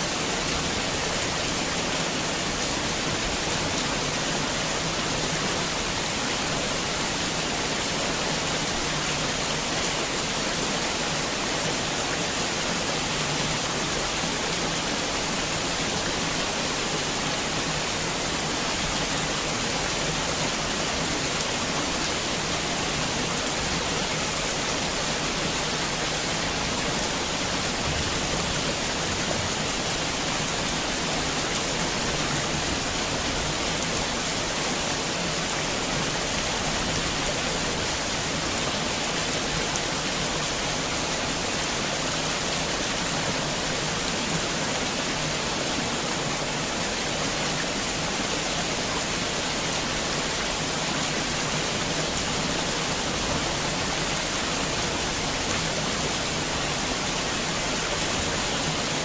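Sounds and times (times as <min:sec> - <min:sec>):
heavy rain falling: 0:00.0 - 0:59.0.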